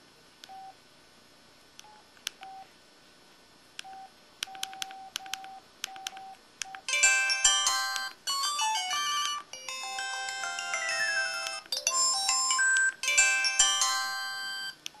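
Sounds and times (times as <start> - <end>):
synthesized phone chime jingles: 6.9 - 14.8.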